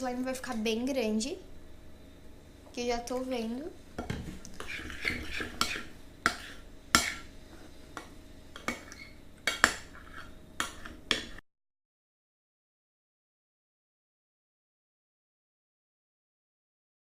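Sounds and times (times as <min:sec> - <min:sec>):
utensil scraping slime in bowl: 0:04.3 - 0:07.7, 0:08.6 - 0:11.4.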